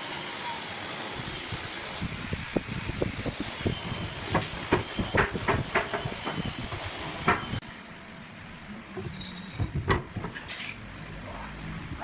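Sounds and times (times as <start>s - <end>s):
knocks on wooden drawer parts: 9.6s - 10.4s.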